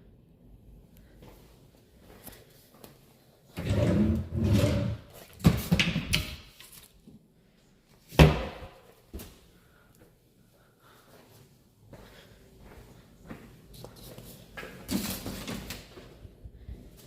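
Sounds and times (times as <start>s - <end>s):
door sliding and clattering: 3.6s - 6.3s.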